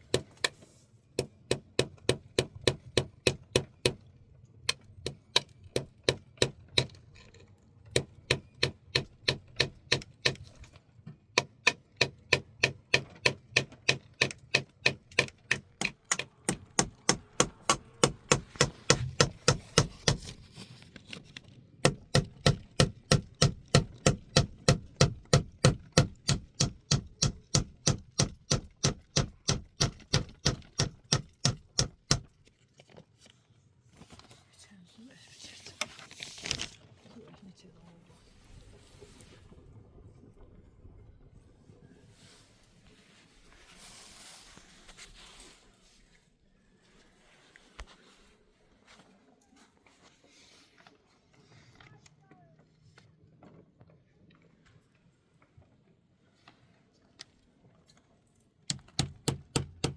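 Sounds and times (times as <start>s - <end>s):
hammer driving nails: 1.2s - 4.1s, 4.7s - 20.4s, 21.8s - 32.4s, 58.7s - 59.9s.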